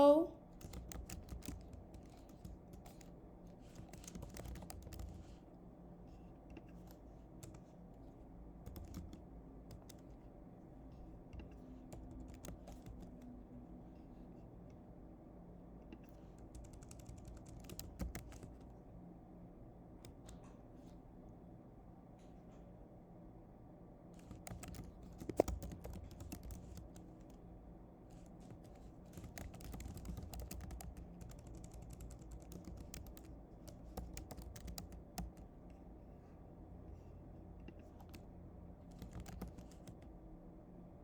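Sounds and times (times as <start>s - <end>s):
computer keyboard typing: 0.5s - 5.4s, 6.5s - 7.8s, 8.6s - 10.2s, 11.3s - 13.3s, 16.0s - 18.7s, 24.2s - 27.4s, 28.1s - 35.8s, 37.7s - 40.2s.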